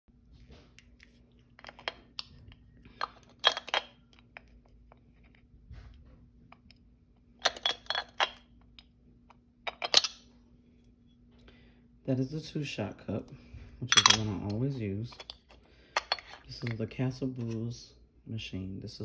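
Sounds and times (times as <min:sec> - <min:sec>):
metal filter cups clinking: 0:02.9 - 0:04.2, 0:07.4 - 0:08.4, 0:09.7 - 0:10.2, 0:13.9 - 0:16.8.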